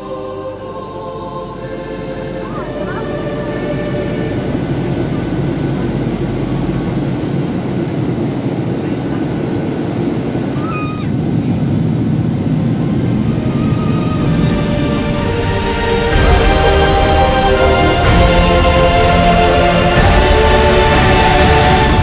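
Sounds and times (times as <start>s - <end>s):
airplane cabin noise: 0.0s - 22.0s.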